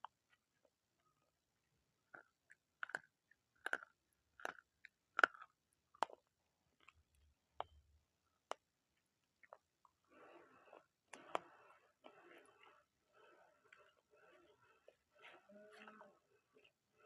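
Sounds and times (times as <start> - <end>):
crisp food crunching: 2.0 - 7.0.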